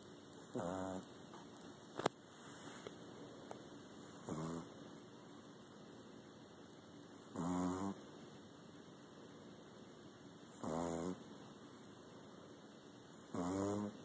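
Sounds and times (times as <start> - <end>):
quiet breathing: 0.5 - 5.6, 9.0 - 10.0, 11.2 - 14.0
short pitched snores: 4.2 - 4.7, 7.4 - 8.0, 10.6 - 11.2, 13.3 - 14.0.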